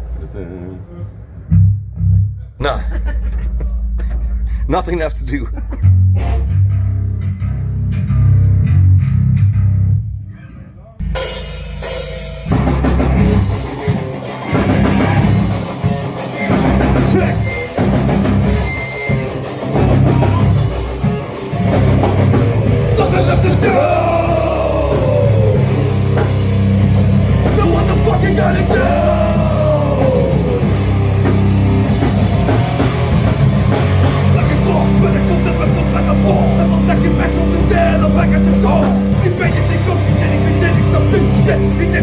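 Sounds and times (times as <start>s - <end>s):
bass and guitar chords: 1.2s - 42.0s
drum kit: 11.0s - 42.0s
rock band playing live: 11.0s - 42.0s.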